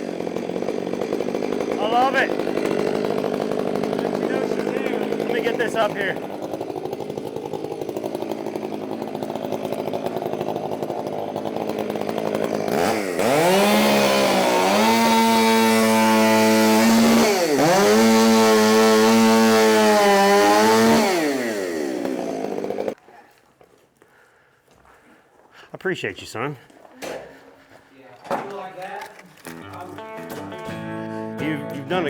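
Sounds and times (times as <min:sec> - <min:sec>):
chainsaw cutting wood: 0:00.0 - 0:23.0
chainsaw idling and revving: 0:00.0 - 0:23.0.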